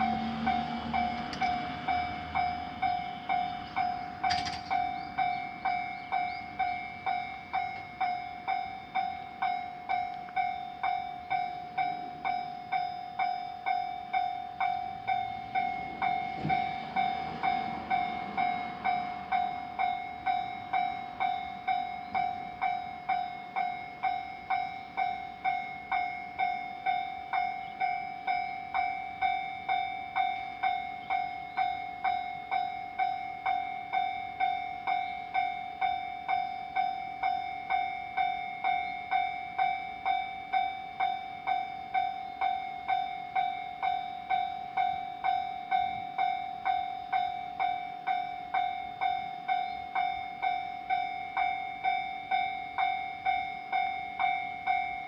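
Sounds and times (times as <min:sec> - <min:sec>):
railroad crossing bell ringing: 0:00.0 - 0:55.0.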